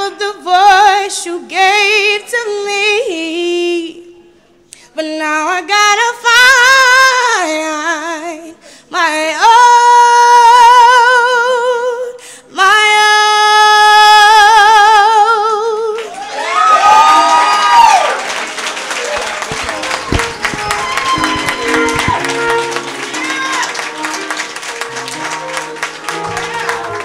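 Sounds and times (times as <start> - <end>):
woman singing unaccompanied: 0.0 - 4.2, 5.0 - 16.0.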